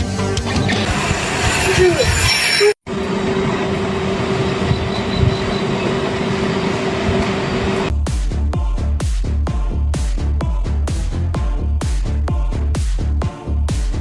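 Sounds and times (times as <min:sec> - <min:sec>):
constant hum: 0:00.8 - 0:07.9
steady rumbling: 0:02.9 - 0:07.9.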